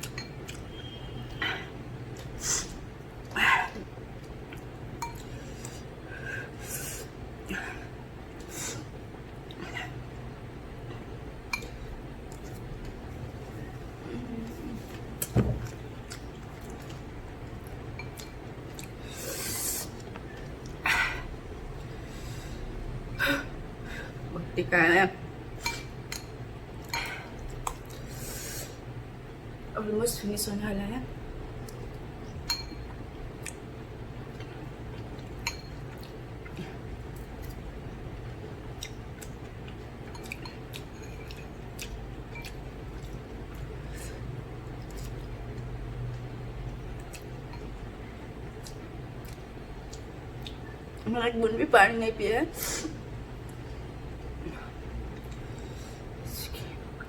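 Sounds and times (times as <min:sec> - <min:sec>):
steady low hum: 0:00.0 - 0:57.0
squishy eating sounds: 0:38.7 - 0:47.5.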